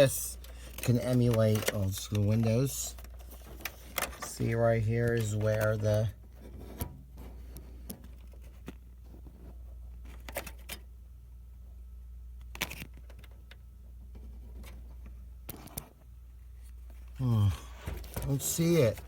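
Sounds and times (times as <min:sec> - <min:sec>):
computer parts clicking and rattling: 0:00.0 - 0:06.1.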